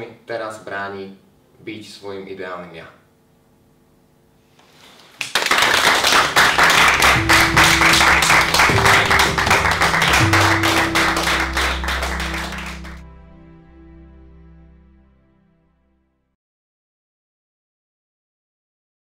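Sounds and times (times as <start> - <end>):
applause: 5.2 - 13.0
music with sustained notes and bass: 6.4 - 16.3.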